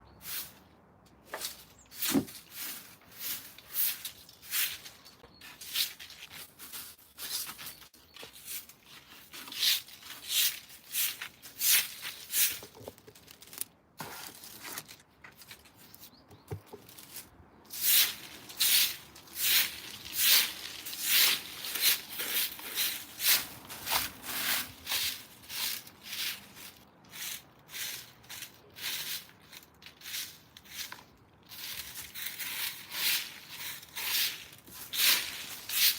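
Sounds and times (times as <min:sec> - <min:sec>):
footsteps crunching on dry ground: 0:01.2 - 0:15.9, 0:16.8 - 0:26.8.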